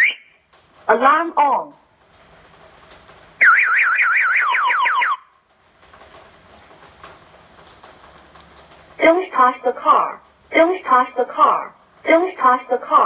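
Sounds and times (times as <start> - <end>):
motorcycle alarm siren: 0.0 - 0.3, 3.4 - 5.3.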